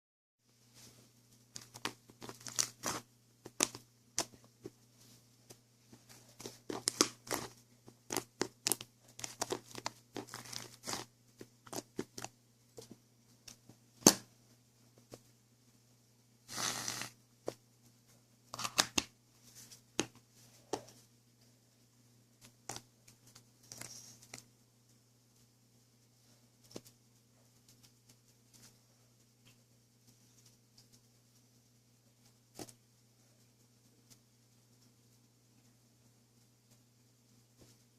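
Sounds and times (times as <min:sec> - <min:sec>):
crinkling and tearing: 0:01.5 - 0:04.3, 0:06.3 - 0:12.3.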